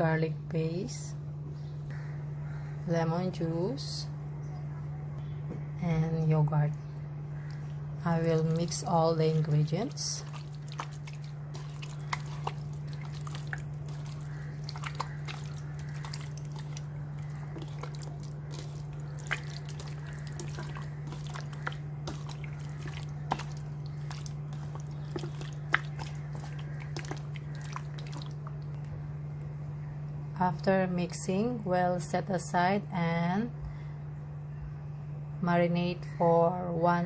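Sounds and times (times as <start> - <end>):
low hum: 0.0 - 37.0
chicken squelching in marinade: 7.5 - 28.9.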